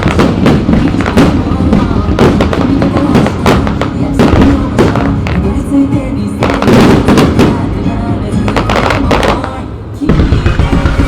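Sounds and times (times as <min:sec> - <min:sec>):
fireworks shells bursting: 0:00.0 - 0:05.6, 0:06.3 - 0:11.0
music playing: 0:00.0 - 0:11.0.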